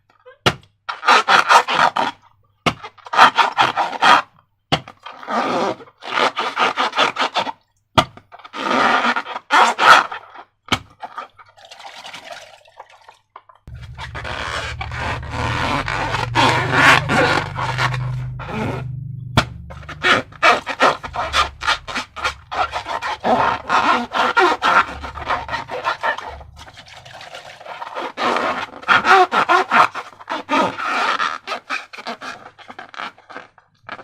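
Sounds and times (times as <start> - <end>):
slime squelching: 13.7 - 28.1.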